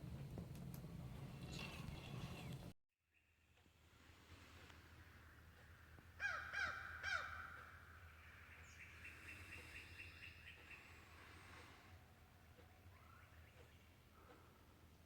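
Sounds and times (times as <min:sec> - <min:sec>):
low steady hum: 0:00.0 - 0:02.7
bird calling: 0:05.6 - 0:14.6.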